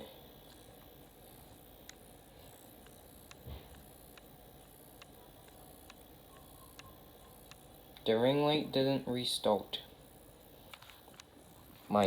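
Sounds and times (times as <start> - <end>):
faint ticks: 1.8 - 8.1.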